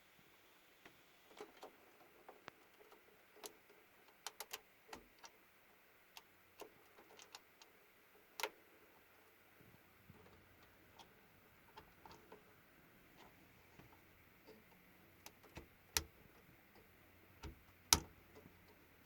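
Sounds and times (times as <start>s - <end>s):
faint clicks and taps: 8.4s - 18.9s.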